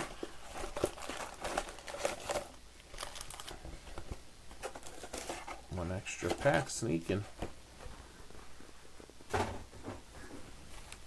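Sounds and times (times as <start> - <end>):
plastic wrappers crinkling: 0.0 - 7.2.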